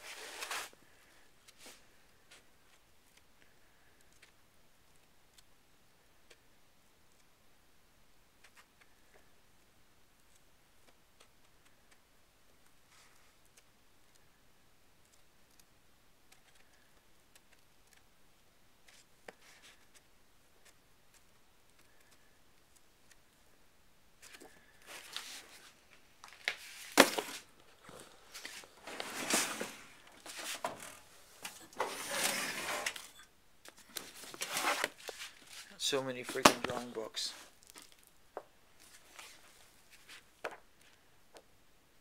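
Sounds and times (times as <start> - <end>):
paper pages rustling: 0.0 - 3.2, 18.8 - 23.2, 24.2 - 38.1, 38.8 - 41.0.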